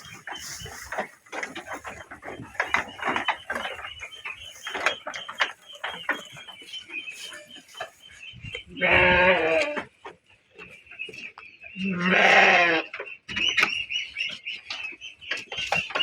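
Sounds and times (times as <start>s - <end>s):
goat bleating: 8.7s - 9.9s, 11.9s - 12.9s.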